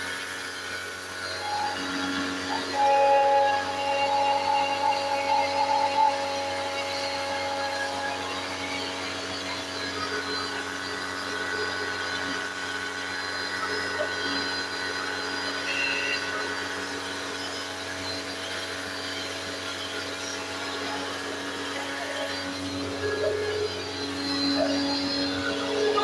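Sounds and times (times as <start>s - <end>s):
electric motor droning: 0.0s - 26.0s.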